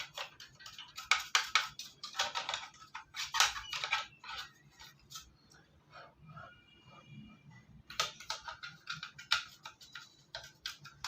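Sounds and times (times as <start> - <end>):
plastic and metal parts clicking: 0.0 - 5.3, 7.8 - 11.0.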